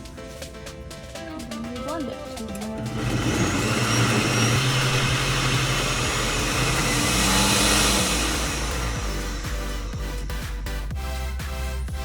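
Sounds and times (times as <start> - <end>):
blender motor running: 2.8 - 10.9.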